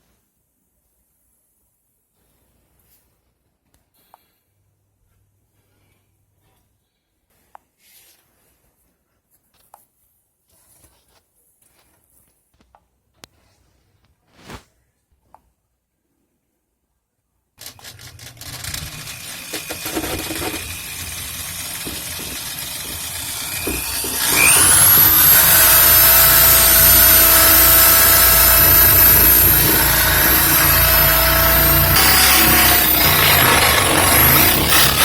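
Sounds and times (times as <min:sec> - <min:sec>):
power drill boring a hole: 0:17.8 - 0:35.0.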